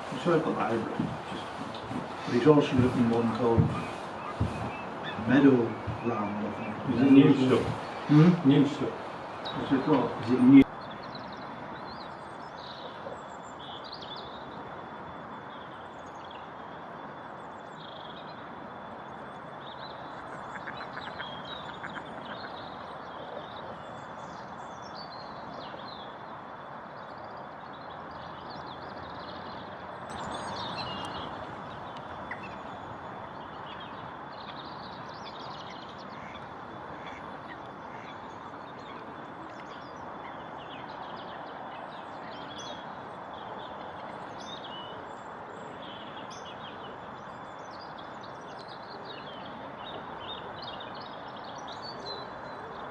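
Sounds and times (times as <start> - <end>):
ducks calling: 0.0 - 10.7, 19.8 - 23.9, 30.1 - 43.9
small birds high calls: 0.0 - 14.7, 17.6 - 52.9
wetland birds calling: 0.0 - 26.2, 26.8 - 52.9
steady background noise: 0.0 - 52.9.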